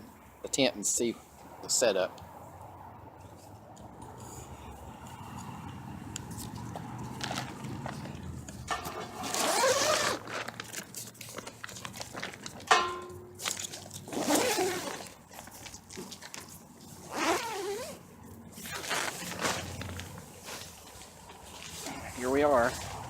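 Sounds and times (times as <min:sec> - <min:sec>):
tent zipper pulled open: 0:08.9 - 0:10.6, 0:13.4 - 0:15.6, 0:17.0 - 0:18.0, 0:18.6 - 0:20.7.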